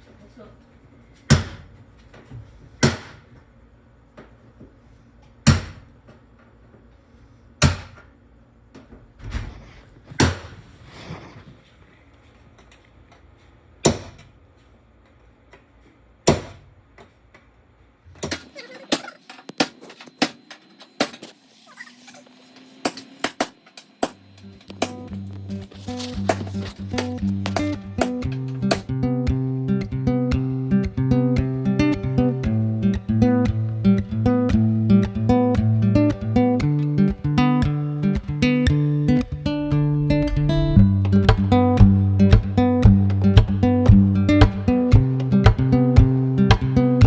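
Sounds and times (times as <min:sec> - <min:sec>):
hammer striking metal: 0:22.8 - 0:25.2, 0:26.0 - 0:28.8.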